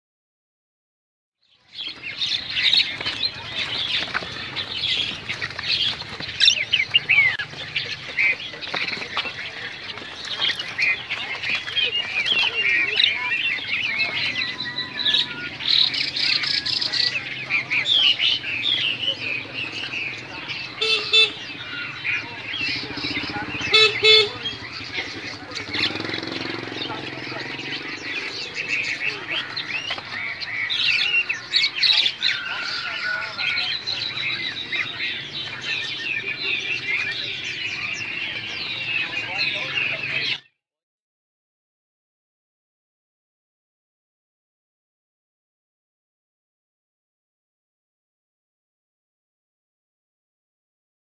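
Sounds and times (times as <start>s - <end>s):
songbirds chirping and trilling: 1.4s - 40.6s.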